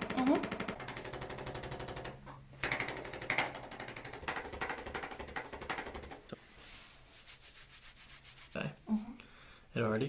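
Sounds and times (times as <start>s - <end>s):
percussive massage pulses: 0.0s - 6.4s.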